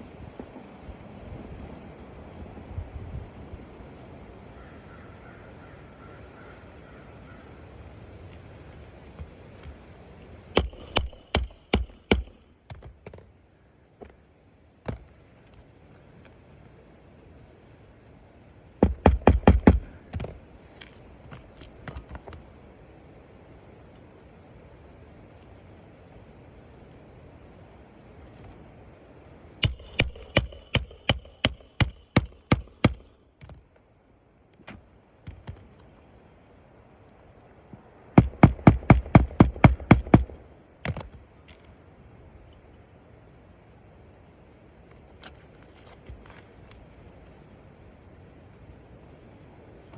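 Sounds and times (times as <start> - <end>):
hammer striking nail: 10.6 - 12.9, 18.8 - 20.3, 29.6 - 33.6, 38.2 - 41.0.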